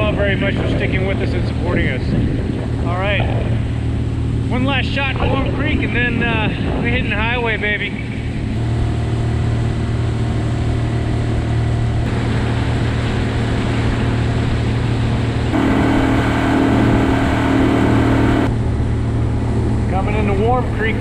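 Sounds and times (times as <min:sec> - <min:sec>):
outboard motor droning: 0:08.6 - 0:19.5
high droning tone: 0:15.5 - 0:18.6.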